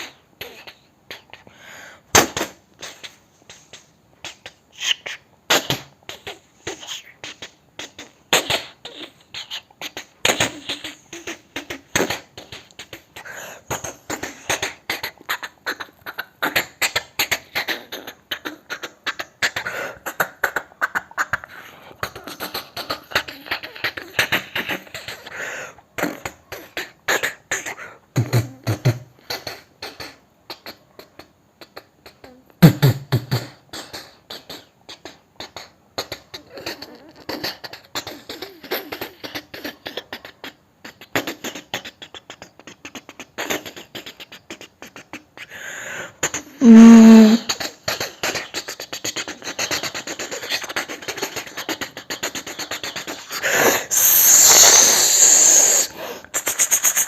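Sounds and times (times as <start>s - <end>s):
mouth hiss: 41.1s - 57.0s
man imitating train chuffing: 46.4s - 47.6s, 49.6s - 57.0s.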